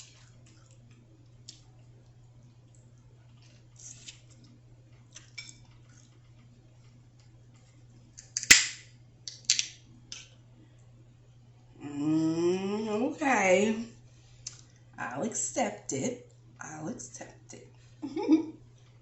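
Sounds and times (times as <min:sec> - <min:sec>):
crab shell cracking: 0:08.2 - 0:10.3.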